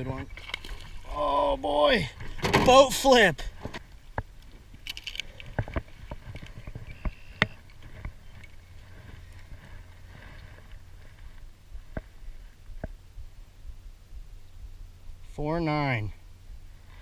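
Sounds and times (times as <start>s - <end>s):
low steady rumble: 0.0s - 17.0s
knocks and clicks in a boat: 3.5s - 13.0s.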